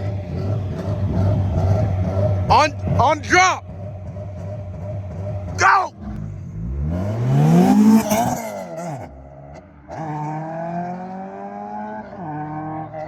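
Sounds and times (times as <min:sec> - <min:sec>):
motorcycle engine revving up: 0:00.0 - 0:12.8
motorcycle engine passing by: 0:03.8 - 0:09.2.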